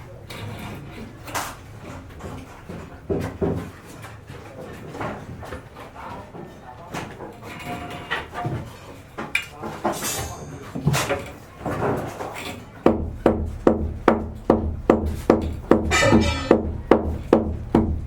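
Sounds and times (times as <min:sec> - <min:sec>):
knocks and clatter: 0:00.2 - 0:18.0
background music with steady beat: 0:12.9 - 0:18.0.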